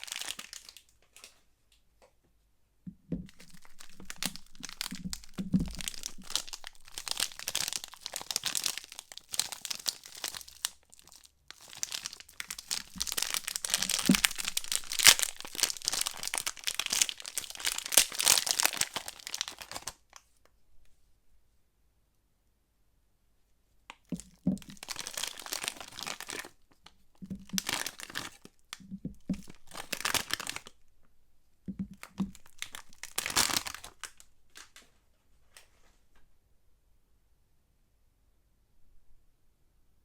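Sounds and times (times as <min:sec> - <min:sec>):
wrapper crinkling and tearing: 0:00.0 - 0:01.4, 0:03.2 - 0:20.2, 0:24.0 - 0:30.8, 0:31.8 - 0:34.9
soft low thumps: 0:02.9 - 0:06.6, 0:27.2 - 0:27.6, 0:31.7 - 0:32.4.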